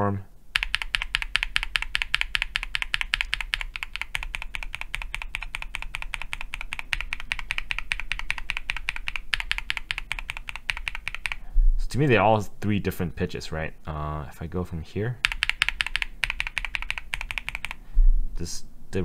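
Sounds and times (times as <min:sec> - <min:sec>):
mechanical keyboard typing: 0:00.5 - 0:11.4, 0:15.2 - 0:17.8.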